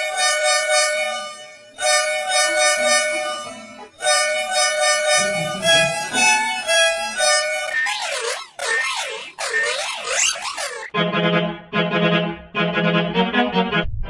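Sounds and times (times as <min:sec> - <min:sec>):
bus horn blasts: 0:00.0 - 0:07.6.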